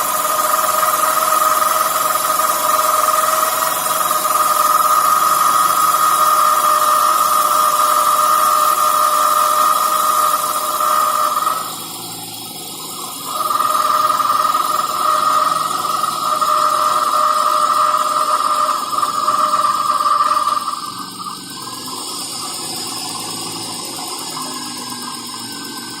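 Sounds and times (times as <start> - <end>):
high-pitched water pump whine: 0.0 - 26.0
car engine running: 18.7 - 26.0.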